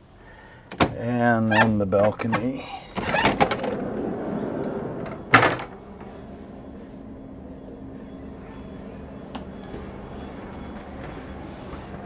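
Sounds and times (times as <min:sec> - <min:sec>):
steady low hum: 0:00.0 - 0:12.0
sliding door opening: 0:03.0 - 0:08.4
loud clunk: 0:05.0 - 0:06.1.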